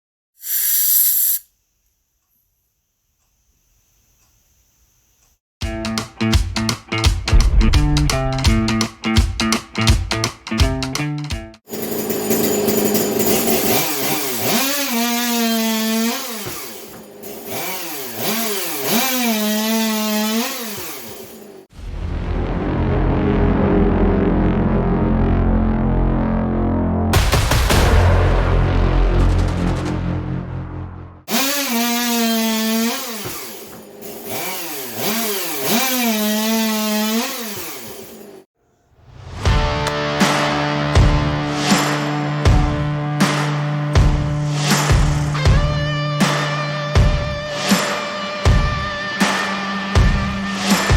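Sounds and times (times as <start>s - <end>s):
chainsaw revving: 11.7s - 21.7s, 31.3s - 38.5s.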